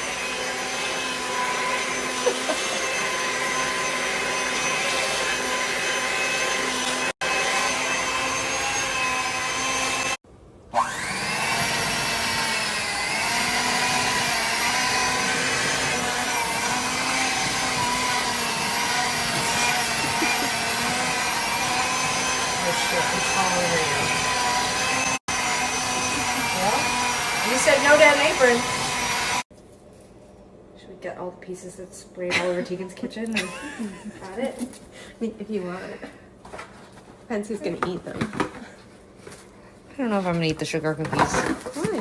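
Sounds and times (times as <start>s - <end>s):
electric motor whining: 0.0s - 10.2s, 10.8s - 29.5s.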